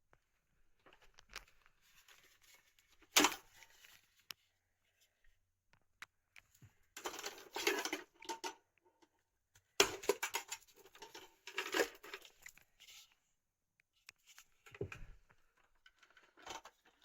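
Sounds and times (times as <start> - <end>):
rustling crinkling handling noise: 0.3 - 5.2, 9.8 - 13.3.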